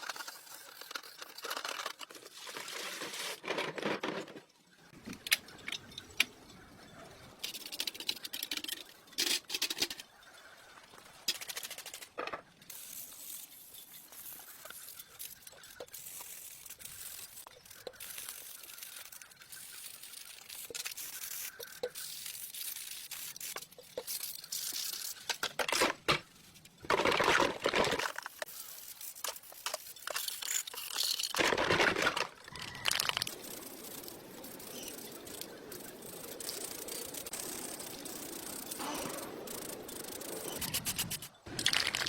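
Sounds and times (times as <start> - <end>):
scraping and rubbing: 0.0 - 4.5.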